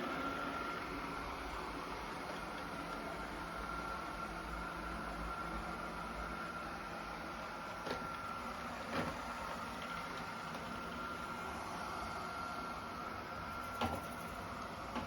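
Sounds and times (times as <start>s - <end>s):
robot vacuum motor whine: 0.0s - 15.0s.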